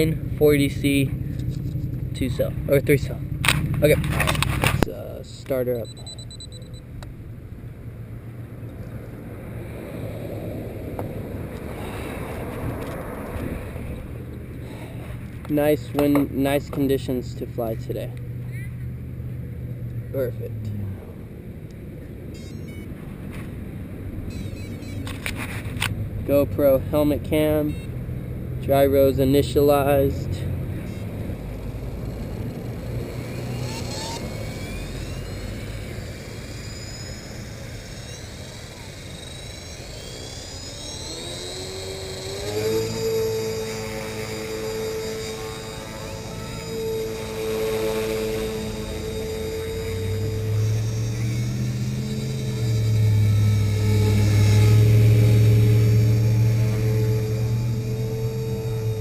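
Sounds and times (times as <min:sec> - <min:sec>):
electric motor whine: 0:00.0 - 0:59.0
helicopter rotor whooshing: 0:00.0 - 0:59.0.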